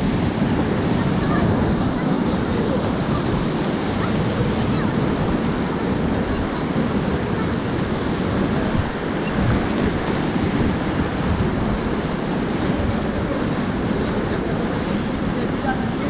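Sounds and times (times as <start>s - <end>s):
river water rushing: 0.0s - 16.0s
wind buffeting microphone: 0.0s - 16.0s.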